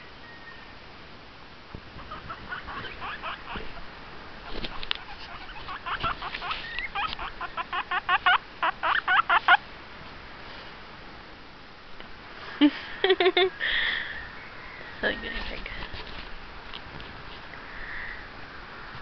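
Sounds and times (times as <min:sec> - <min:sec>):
guinea pig squeaking: 0:02.0 - 0:03.8, 0:04.5 - 0:09.6.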